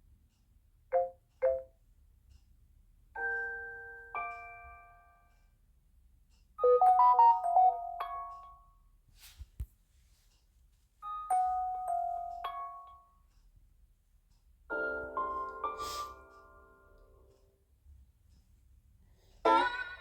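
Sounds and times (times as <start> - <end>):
phone notification tones: 1.0 - 1.7.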